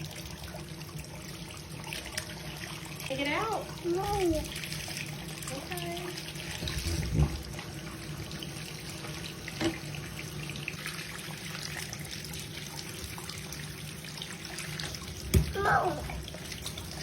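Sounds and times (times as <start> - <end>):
running water trickling: 0.0 - 17.0
sharp splashes or knocks: 15.3 - 15.8.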